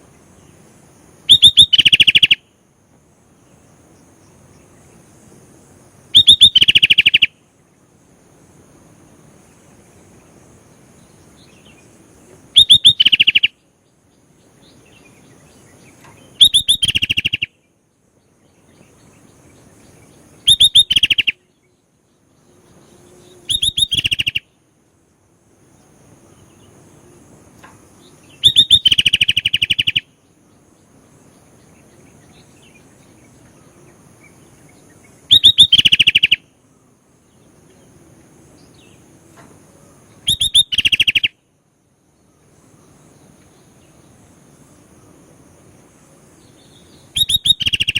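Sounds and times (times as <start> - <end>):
bird chattering song: 1.3 - 2.5, 6.1 - 7.4, 11.0 - 24.6, 28.0 - 36.5, 40.2 - 41.4, 46.4 - 47.9.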